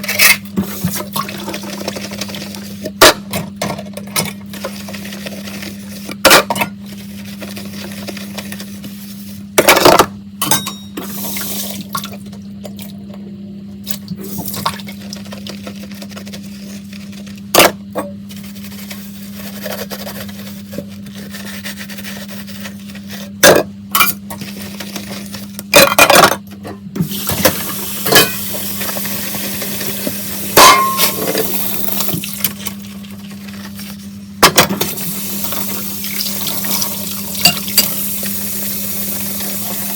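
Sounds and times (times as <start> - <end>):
dishes clinking in sink: 9.6 - 11.1, 27.4 - 28.5, 30.6 - 31.6
tap water running: 11.0 - 17.4, 27.0 - 33.9, 34.8 - 39.9.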